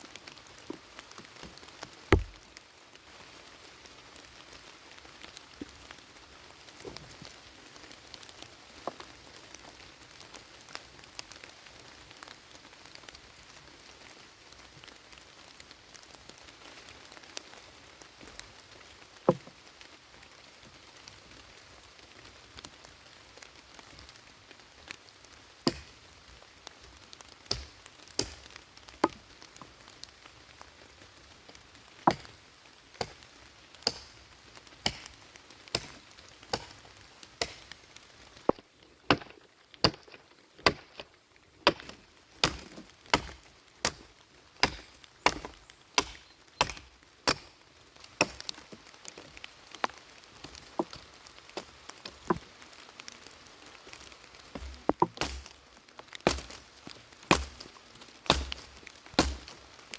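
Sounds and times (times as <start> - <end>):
steady rain: 0.0 - 59.9
sharp knocks: 2.1 - 2.4.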